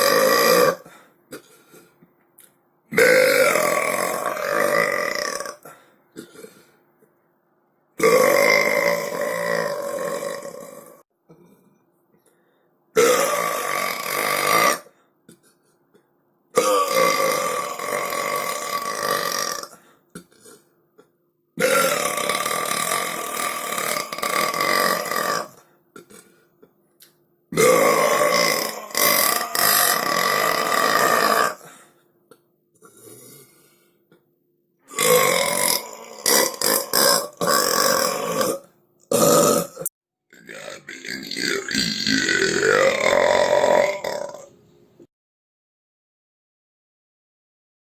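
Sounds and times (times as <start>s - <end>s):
person burping: 0.0s - 2.0s, 2.9s - 6.7s, 8.0s - 11.6s, 13.0s - 14.9s, 16.6s - 26.4s, 27.5s - 33.6s, 34.9s - 44.5s.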